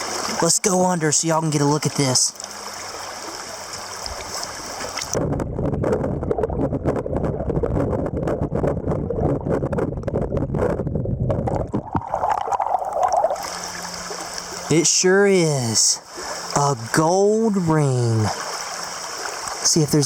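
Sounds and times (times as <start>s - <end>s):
muffled underwater river rumble: 2.8s - 14.8s
underwater clicks and bubbling: 3.7s - 14.5s.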